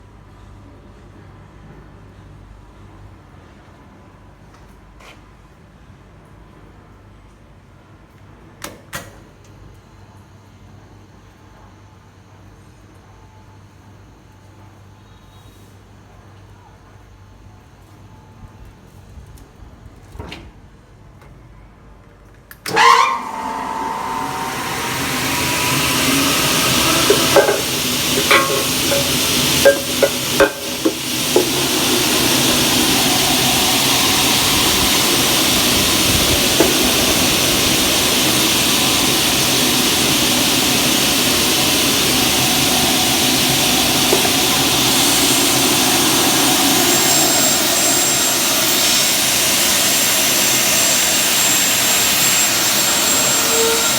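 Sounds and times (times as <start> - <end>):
cutting saw whirring: 22.7 - 53.9
sharp clicks and knocks: 26.2 - 33.3.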